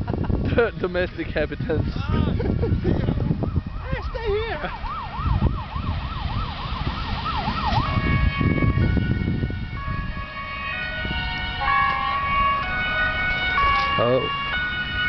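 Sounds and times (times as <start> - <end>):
warbling siren-like tone: 3.4 - 15.0.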